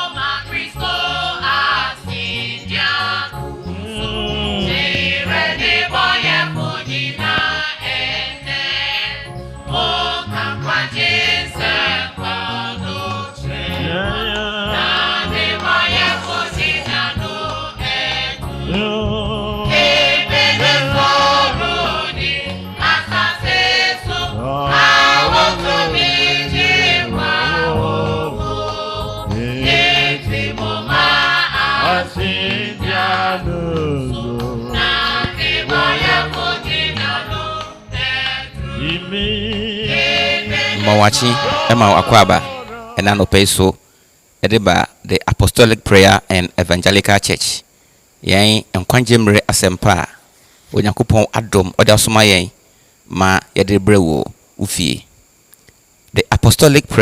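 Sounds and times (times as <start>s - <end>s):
instrumental backing: 0.0s - 43.2s
choir singing gospel music: 0.0s - 43.8s.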